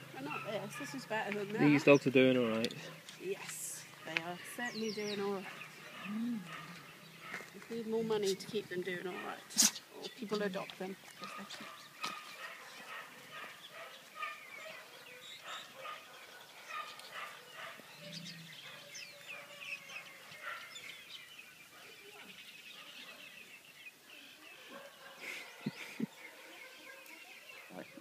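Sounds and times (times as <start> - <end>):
dogs barking and yelping: 0.0 - 1.8, 3.9 - 7.6, 9.1 - 9.8, 11.2 - 23.5, 24.5 - 28.0.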